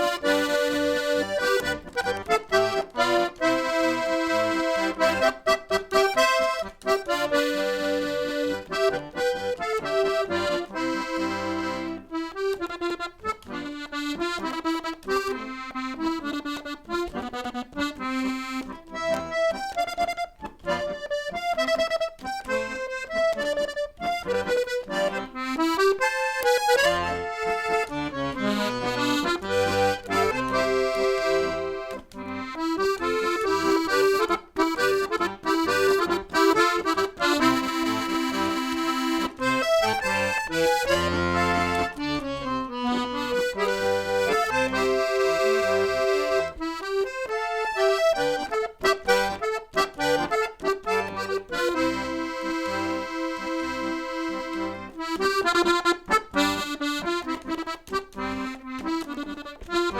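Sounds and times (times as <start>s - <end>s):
accordion playing a lively tune: 0.0s - 59.9s.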